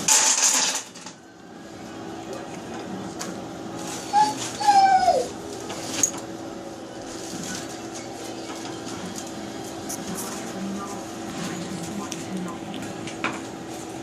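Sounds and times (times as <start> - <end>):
animal whining calls: 3.9 - 5.4.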